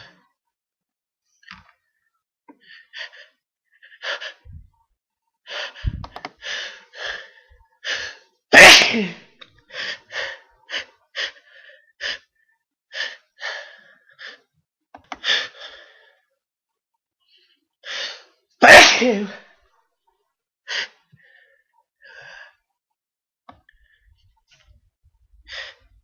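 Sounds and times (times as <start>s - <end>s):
person sneezing: 8.5s - 9.3s, 18.6s - 19.4s.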